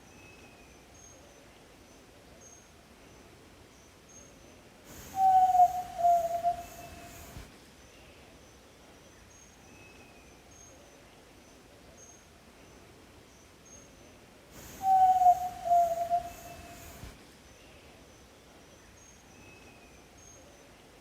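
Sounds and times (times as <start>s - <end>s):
faint high chirps: 4.9s - 7.4s, 14.6s - 17.1s
bird long low whistle: 4.9s - 7.5s, 14.6s - 17.1s.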